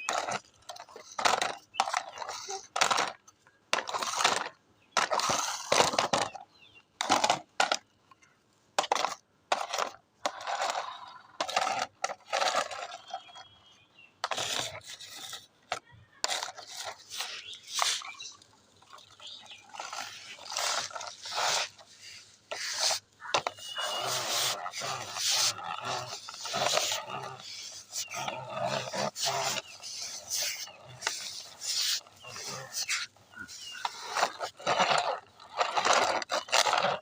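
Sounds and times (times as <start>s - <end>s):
small hard objects clattering: 0.0s - 6.4s, 14.2s - 37.0s.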